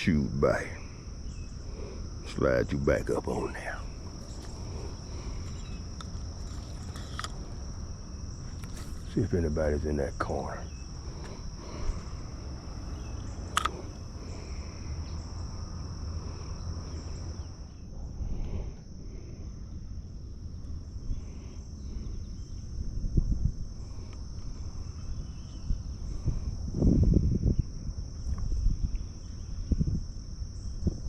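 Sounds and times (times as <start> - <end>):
insect chorus: 0.0 - 31.0
wind rumble on microphone: 0.0 - 31.0
sharp click: 13.5 - 13.8.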